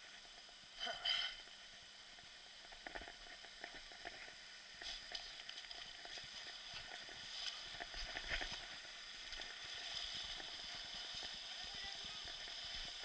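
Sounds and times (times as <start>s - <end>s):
water trickling and splashing: 2.1s - 13.0s.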